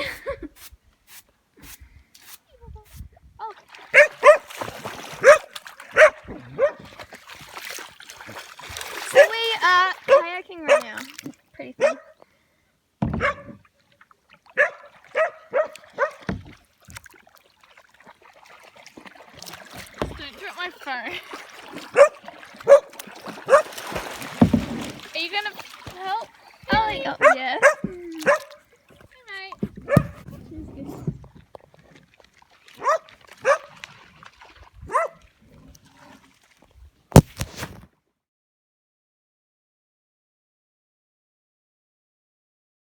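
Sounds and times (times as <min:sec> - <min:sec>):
sharp knock: 0:37.1 - 0:37.5.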